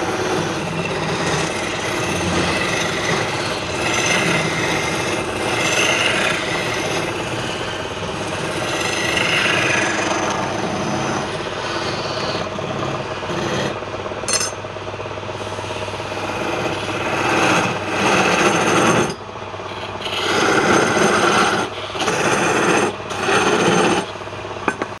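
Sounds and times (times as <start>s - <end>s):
lathe tool scraping wood: 0.0s - 13.8s, 15.3s - 25.0s
lathe motor hum: 0.0s - 25.0s.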